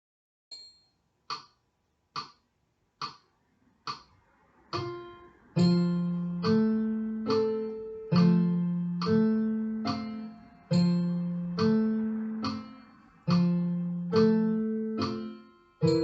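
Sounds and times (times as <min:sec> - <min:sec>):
count-in clicks: 0:04.8 - 0:16.0
keyboard piano playing: 0:04.8 - 0:16.0.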